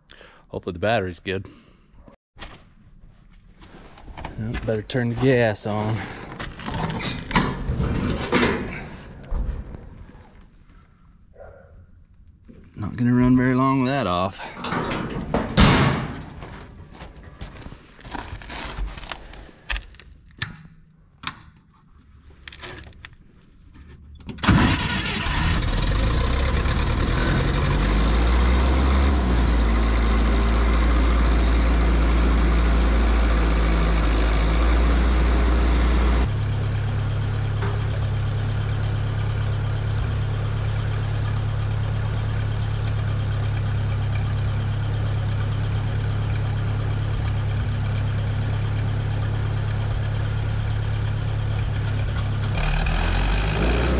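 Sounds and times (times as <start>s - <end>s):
welder engine starting and running: 24.4s - 53.9s.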